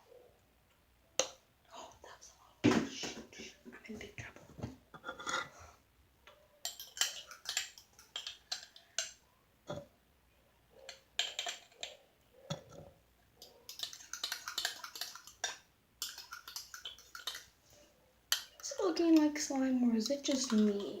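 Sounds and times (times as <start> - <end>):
slime being stirred: 6.6 - 9.2, 13.4 - 17.6, 18.3 - 21.0.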